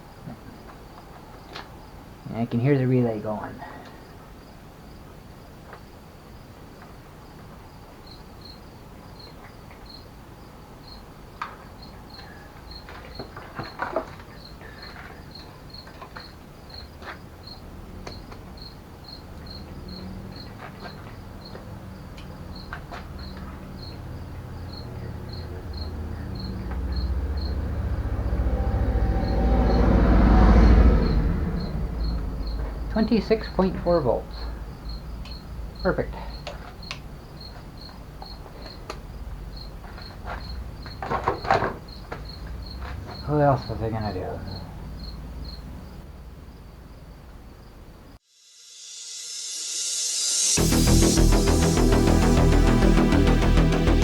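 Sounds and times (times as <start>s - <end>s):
cricket chirping: 0.0s - 54.0s
low rumble: 26.1s - 33.0s.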